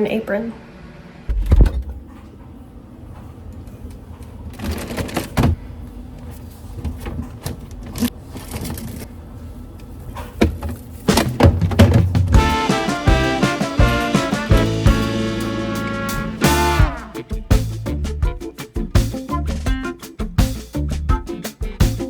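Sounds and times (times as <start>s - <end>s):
swing music: 12.3s - 22.0s.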